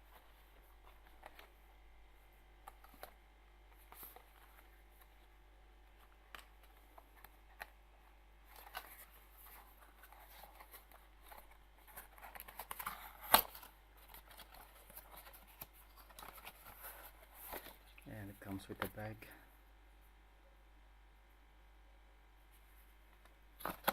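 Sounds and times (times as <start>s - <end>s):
packaging rustling and scraping: 2.7s - 5.3s, 8.4s - 18.0s, 23.6s - 23.9s.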